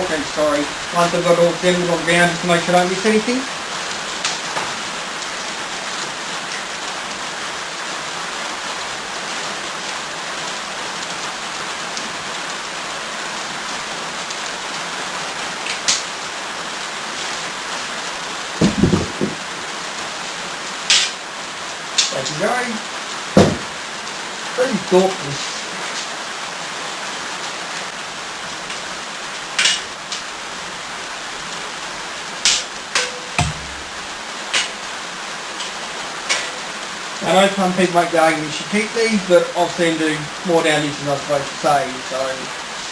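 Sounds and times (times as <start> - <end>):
steady rain: 0.0 - 42.9
low thud: 18.6 - 19.4, 23.4 - 23.8, 33.3 - 34.0
sharp clicks and knocks: 18.6 - 19.4, 32.4 - 34.8
sharp click: 20.9 - 21.2.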